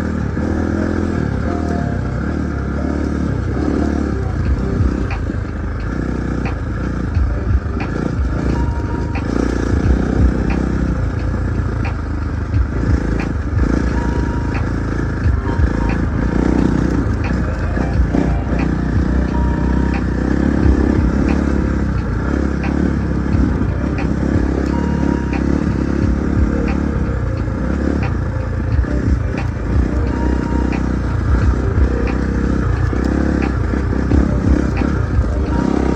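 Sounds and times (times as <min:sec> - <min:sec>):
dirt bike engine running: 0:00.0 - 0:35.9.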